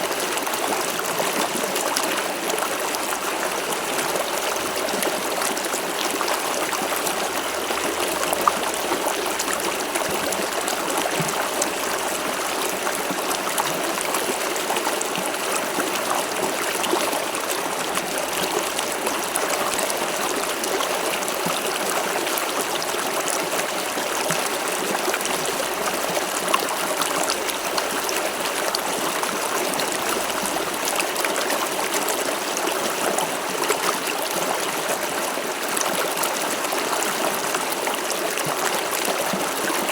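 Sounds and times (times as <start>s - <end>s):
river flowing over stones: 0.0s - 39.9s.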